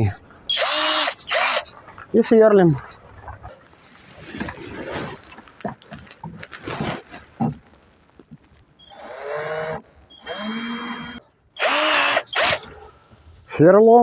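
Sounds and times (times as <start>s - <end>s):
drill motor whine: 8.9s - 12.6s.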